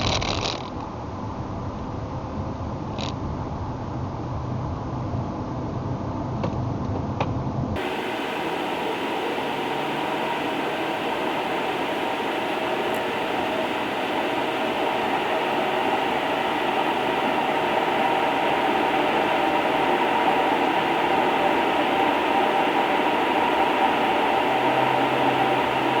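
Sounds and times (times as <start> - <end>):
faint steady tones: 7.8 - 26.0.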